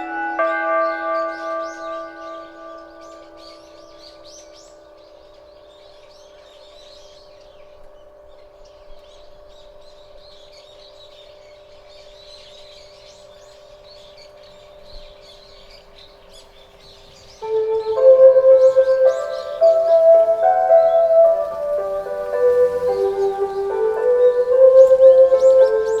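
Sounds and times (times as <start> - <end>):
loudspeaker chime tones ringing: 0.0 - 4.1, 17.4 - 26.0
small birds chirping: 0.0 - 26.0.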